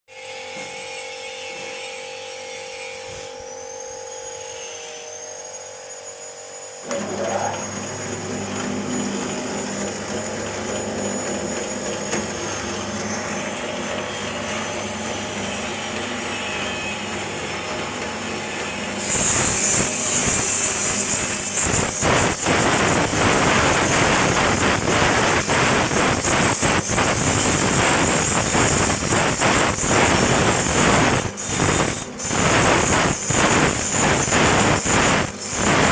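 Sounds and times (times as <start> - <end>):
machine motor humming: 6.8 - 35.9
skewers grinding with rattling clicks: 8.5 - 35.9.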